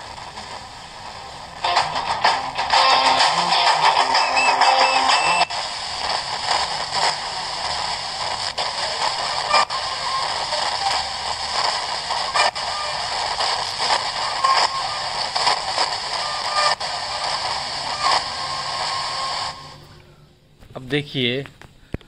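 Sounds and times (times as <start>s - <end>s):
radio static hiss: 0.0s - 22.0s.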